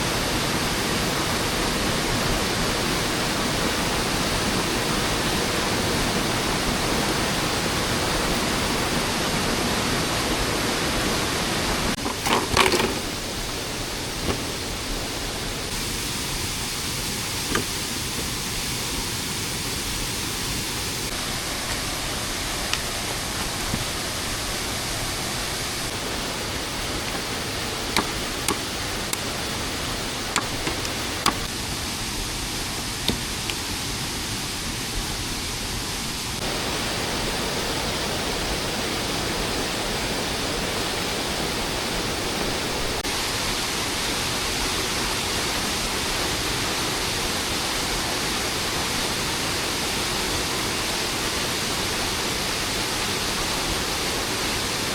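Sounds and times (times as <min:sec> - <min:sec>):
rain hissing: 0:00.0 - 0:54.9
sharp clicks and taps: 0:30.3 - 0:31.5.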